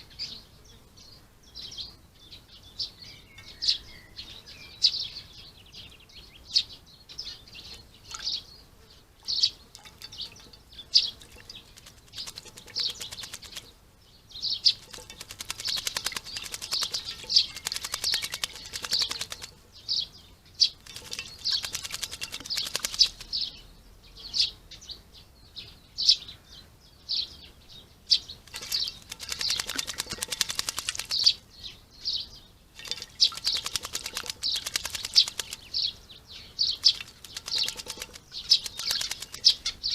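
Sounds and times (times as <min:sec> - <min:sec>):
small birds chirping: 0:00.0 - 0:39.9
fast bird rattling: 0:09.3 - 0:13.7, 0:14.6 - 0:19.9, 0:20.6 - 0:23.6, 0:28.4 - 0:31.4, 0:32.8 - 0:36.0, 0:36.6 - 0:39.9.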